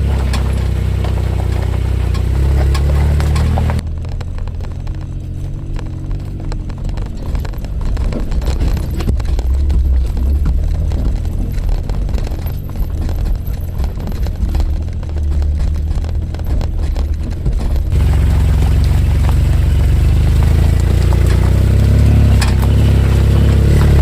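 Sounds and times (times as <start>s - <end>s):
sharp clicks or rattles: 0.0s - 18.1s, 20.3s - 24.0s
engine and drivetrain rumble: 0.0s - 24.0s.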